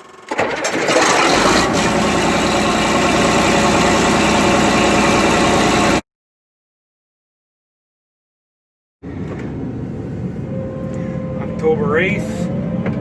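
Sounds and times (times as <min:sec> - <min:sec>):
combine harvester engine rumbling: 0:00.4 - 0:06.0.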